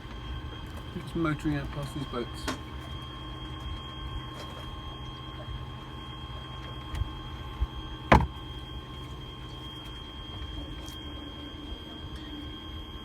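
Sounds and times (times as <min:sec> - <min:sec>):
electric outboard motor whine: 0:00.0 - 0:13.0
sharp knock: 0:08.1 - 0:08.3.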